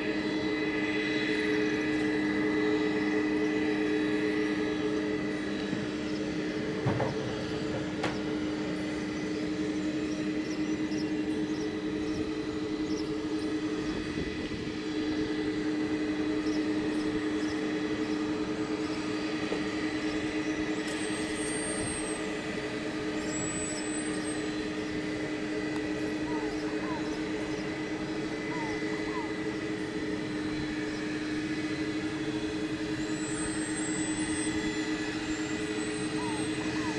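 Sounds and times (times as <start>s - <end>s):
jet engines humming and whining: 0.0s - 36.9s.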